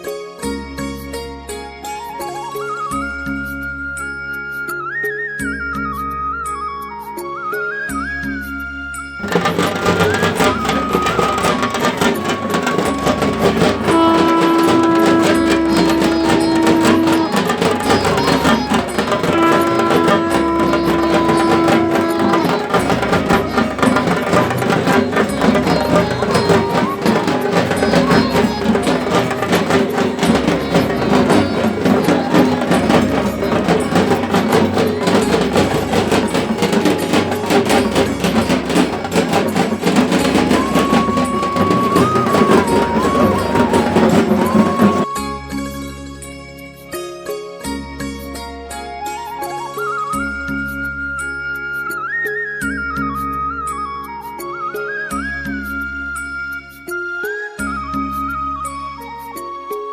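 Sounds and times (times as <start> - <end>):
music with fast percussion: 9.2 - 45.3
long held notes: 9.4 - 38.4.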